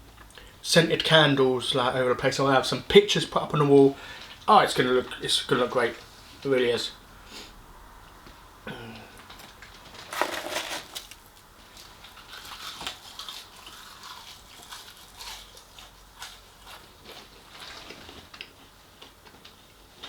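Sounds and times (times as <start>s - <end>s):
chewing crispy fried food: 9.2s - 20.0s.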